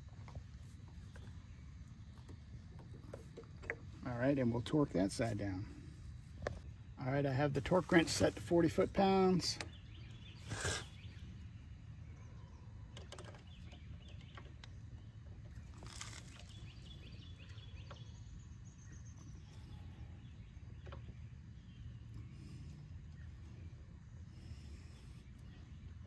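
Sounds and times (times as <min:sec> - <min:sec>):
low outdoor hum: 0:00.0 - 0:26.0
faint bird chirps: 0:09.6 - 0:26.0
torque wrench rasp: 0:10.4 - 0:10.9.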